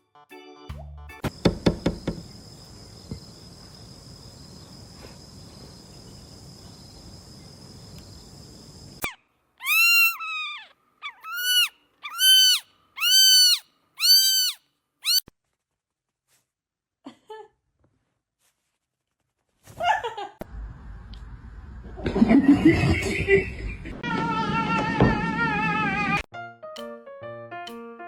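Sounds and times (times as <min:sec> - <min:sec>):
background hiss: 0:01.3 - 0:09.1
animal high-pitched cries: 0:09.0 - 0:15.2.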